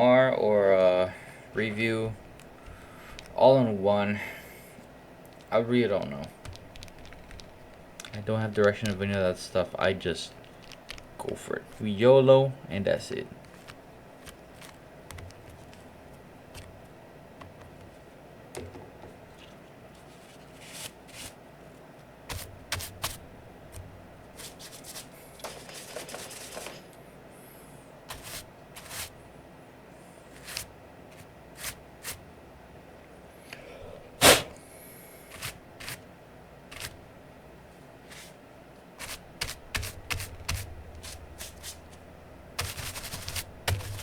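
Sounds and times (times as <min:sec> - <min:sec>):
scrubbing: 0:39.0 - 0:42.0, 0:42.6 - 0:44.0.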